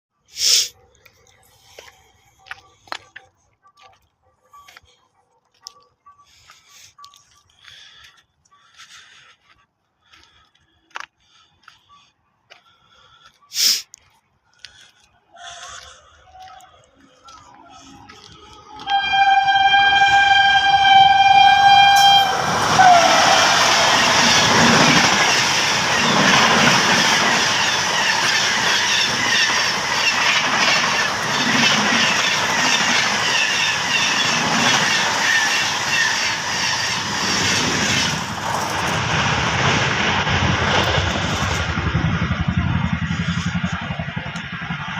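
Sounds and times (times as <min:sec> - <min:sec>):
train horn blast: 0:18.8 - 0:24.3
train coaches clattering over rails: 0:22.4 - 0:39.1.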